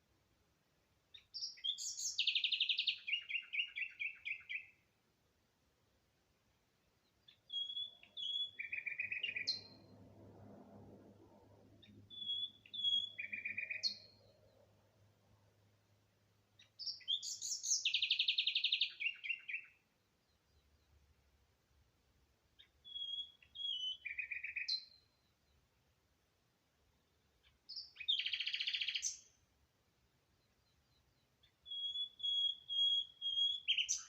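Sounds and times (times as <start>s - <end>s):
songbird singing trills: 1.1s - 4.9s, 7.0s - 10.0s, 11.7s - 14.8s, 16.5s - 21.0s, 22.5s - 25.7s, 26.9s - 29.4s, 30.0s - 34.0s.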